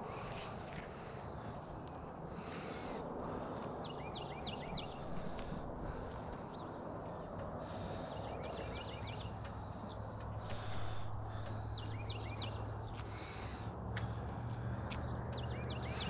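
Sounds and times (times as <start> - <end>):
low hum: 0.0 - 16.0
bird chirping: 8.0 - 13.0, 15.3 - 16.0.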